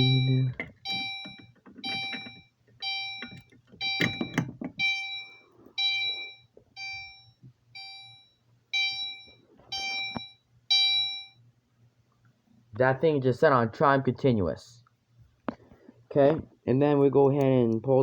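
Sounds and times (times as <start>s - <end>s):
fire alarm chime dings: 0.0s - 11.4s.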